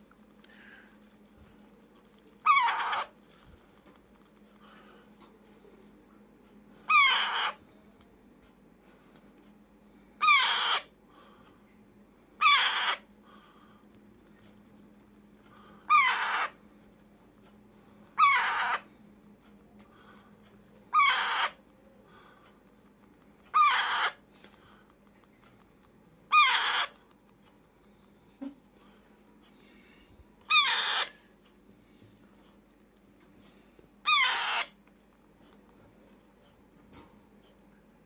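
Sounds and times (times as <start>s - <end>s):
parakeet squawking: 2.4s - 3.2s, 6.9s - 7.6s, 10.2s - 10.9s, 12.4s - 13.0s, 15.9s - 16.6s, 18.2s - 18.9s, 20.9s - 21.6s, 23.5s - 24.2s, 26.3s - 27.0s, 30.5s - 31.2s, 34.0s - 34.8s.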